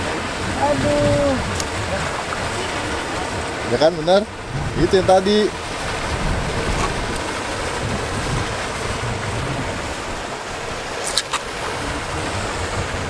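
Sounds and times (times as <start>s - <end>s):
sea waves rushing: 0.0s - 13.0s
strong wind: 0.0s - 13.0s.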